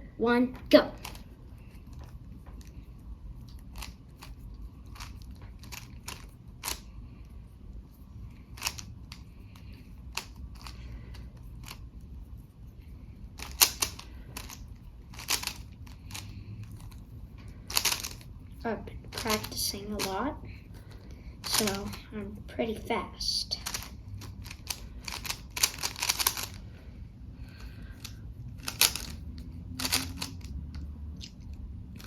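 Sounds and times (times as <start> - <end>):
puzzle cube plastic clicking: 3.5 - 6.9, 8.5 - 11.8, 13.4 - 17.0, 17.7 - 18.3, 21.4 - 22.0, 23.6 - 26.6, 28.0 - 31.6.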